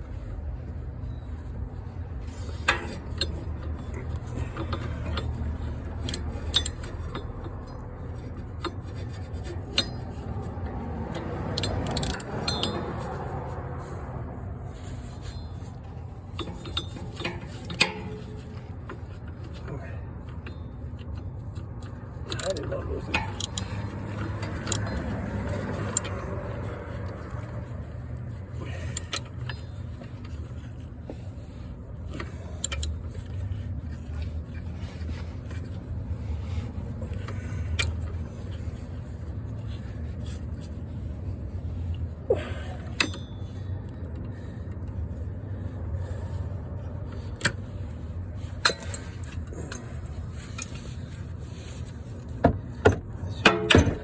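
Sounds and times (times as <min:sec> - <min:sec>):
metallic clinks of hand tools: 0:06.0 - 0:07.8, 0:11.5 - 0:13.1, 0:22.3 - 0:25.1.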